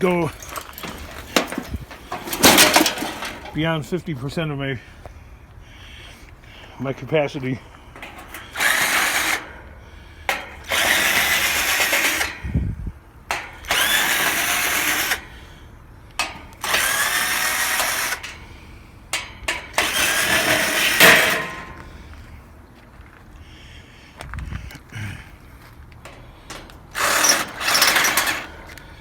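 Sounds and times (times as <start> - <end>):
clicks and knocks: 0.3 - 3.6
cordless drill running: 8.0 - 9.6, 10.3 - 12.4, 13.3 - 15.4, 16.4 - 18.4, 19.7 - 21.6, 26.8 - 28.8.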